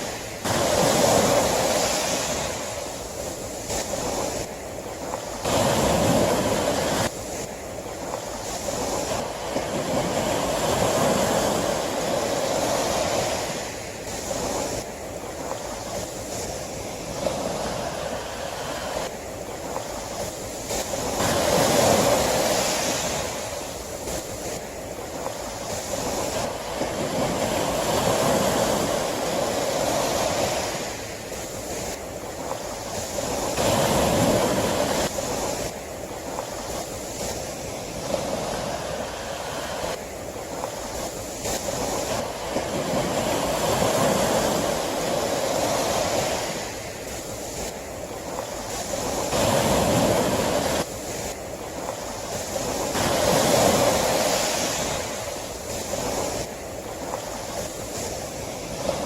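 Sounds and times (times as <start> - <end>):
sea waves breaking on shore: 0.0 - 59.0.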